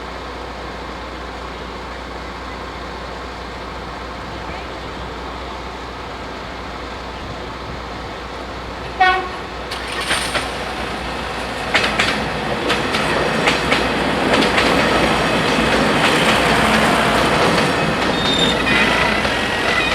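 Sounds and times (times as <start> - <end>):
train wheels clacking: 8.3 - 19.9
train horn blast: 8.9 - 9.6, 17.0 - 19.9.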